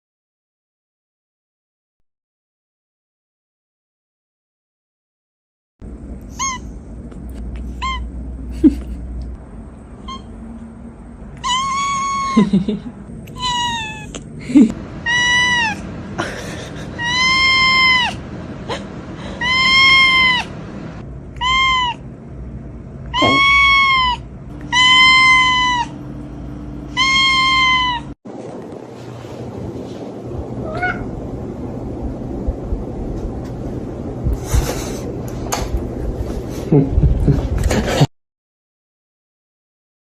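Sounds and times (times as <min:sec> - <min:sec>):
cat meowing: 0:06.3 - 0:06.7, 0:07.8 - 0:08.1, 0:10.0 - 0:10.3, 0:11.4 - 0:12.5, 0:13.3 - 0:14.3, 0:15.0 - 0:15.8, 0:17.0 - 0:18.2, 0:19.4 - 0:20.5, 0:21.4 - 0:22.0, 0:23.1 - 0:26.0, 0:26.9 - 0:28.2, 0:30.6 - 0:31.2.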